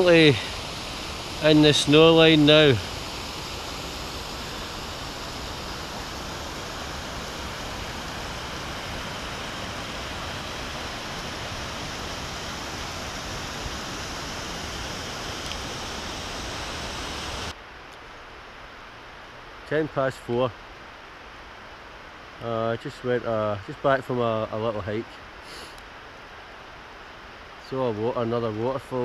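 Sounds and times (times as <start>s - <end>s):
mountain water rushing: 0.0s - 17.6s.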